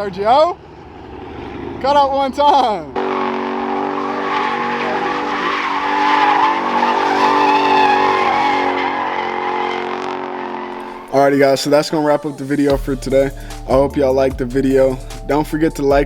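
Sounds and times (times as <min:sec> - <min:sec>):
car engine at high revs: 0:02.9 - 0:11.1
tyres squealing: 0:04.0 - 0:09.8.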